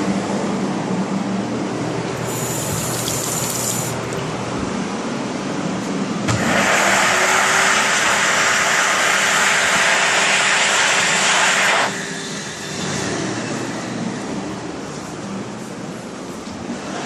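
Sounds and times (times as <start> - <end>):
toilet flushing: 2.2 - 4.2.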